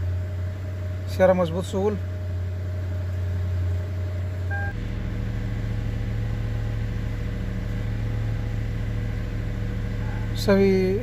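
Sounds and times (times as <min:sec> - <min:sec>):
car engine idling: 0:00.0 - 0:11.0
brief electronic beep: 0:04.5 - 0:04.8.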